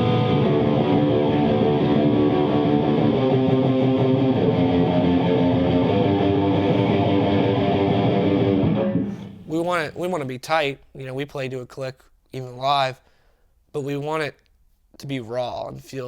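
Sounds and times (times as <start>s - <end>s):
loud electric guitar music: 0.0s - 9.5s.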